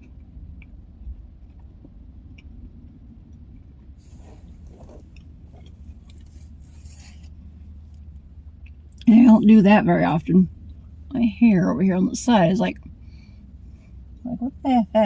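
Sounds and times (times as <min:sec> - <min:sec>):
person chewing crunchy crackers: 0:00.0 - 0:09.1
low hum: 0:00.0 - 0:15.0.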